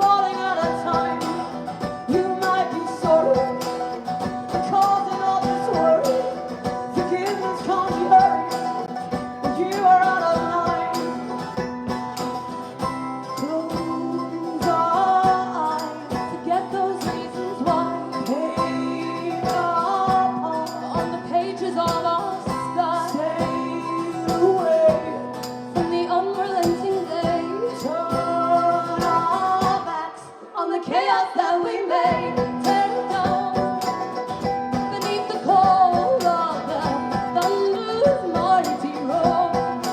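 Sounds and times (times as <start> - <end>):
woman singing: 0.0 - 12.0, 13.2 - 39.9
strummed acoustic guitar: 0.0 - 30.2, 32.0 - 39.9.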